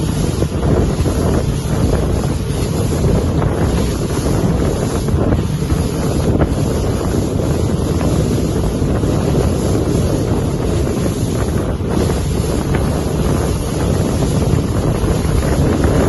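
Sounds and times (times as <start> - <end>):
motorboat rumble and water: 0.0 - 16.0
wind buffeting microphone: 0.0 - 16.0.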